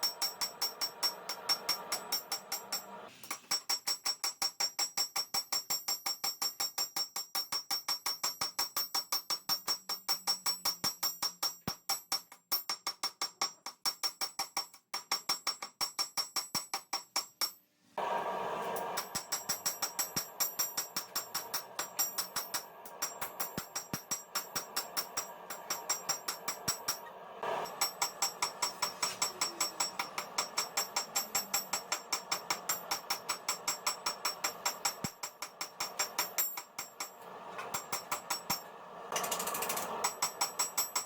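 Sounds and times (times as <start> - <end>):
hammer ringing on anvil: 0.0 - 3.1, 18.7 - 41.0.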